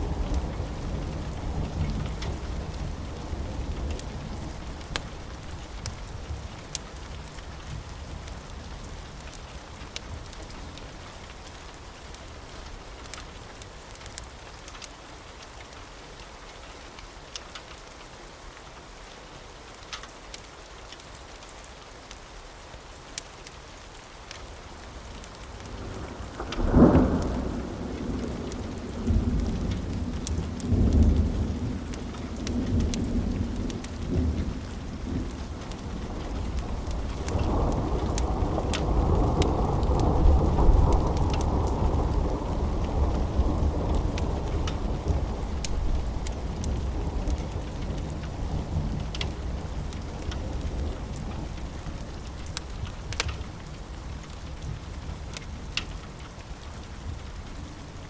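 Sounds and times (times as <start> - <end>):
thunder clap and rumble: 0.0 - 11.8, 25.5 - 58.0
steady rain: 0.0 - 58.0.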